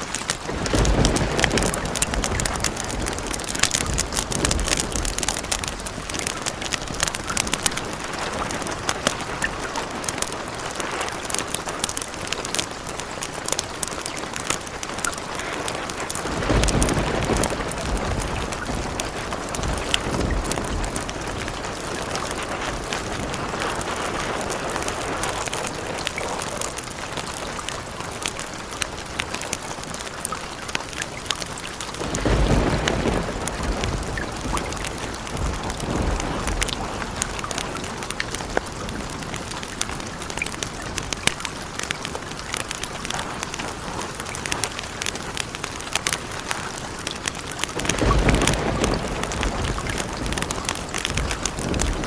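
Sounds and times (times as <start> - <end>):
steady rain: 0.0 - 52.0
low roll of thunder: 0.1 - 10.6, 15.3 - 26.5, 32.0 - 41.2, 47.7 - 52.0.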